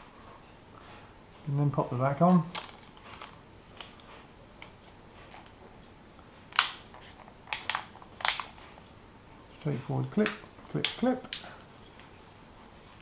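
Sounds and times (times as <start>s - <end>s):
plastic phone cover snapping: 7.5s - 8.5s.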